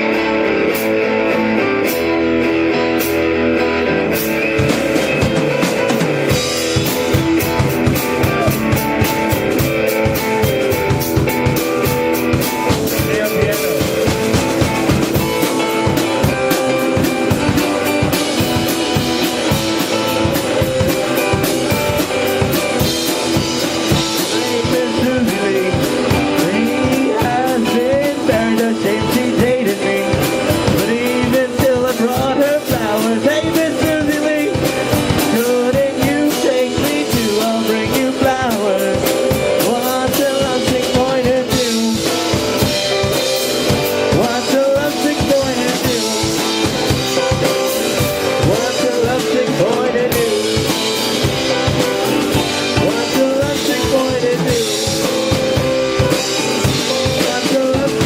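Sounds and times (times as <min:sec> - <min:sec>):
electric guitar: 0:00.0 - 0:58.0
drum beat: 0:04.0 - 0:58.0
person singing: 0:05.8 - 0:10.4, 0:23.8 - 0:43.0, 0:43.6 - 0:58.0.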